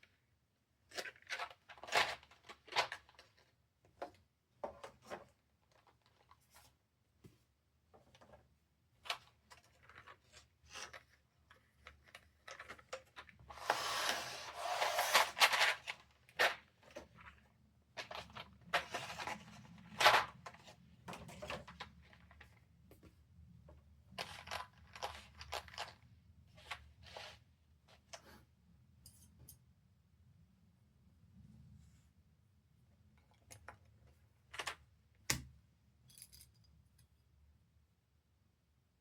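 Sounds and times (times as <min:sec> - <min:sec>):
packaging rubbing and rustling: 0:13.5 - 0:16.0.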